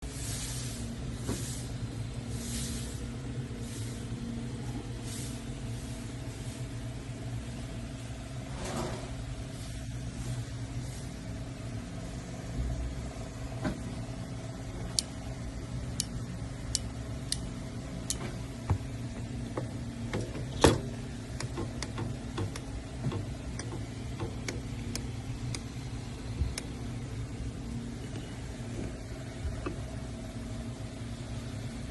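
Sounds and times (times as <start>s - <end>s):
low mechanical hum: 0.0s - 31.9s.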